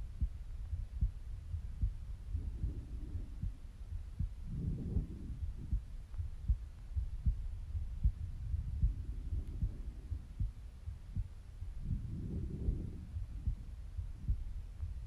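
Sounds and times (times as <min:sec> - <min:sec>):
heartbeat thumps: 0:00.0 - 0:15.0
breathy rush of breathing: 0:02.3 - 0:03.8, 0:11.8 - 0:13.7.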